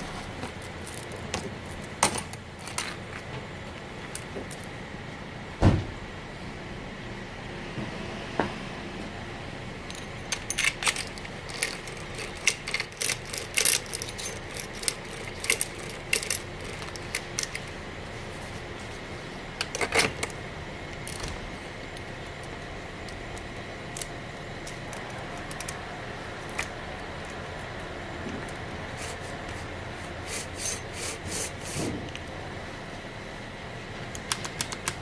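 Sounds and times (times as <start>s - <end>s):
metal parts clicking and clinking: 0.4s - 3.2s, 9.9s - 17.7s, 19.6s - 20.3s, 30.3s - 31.8s.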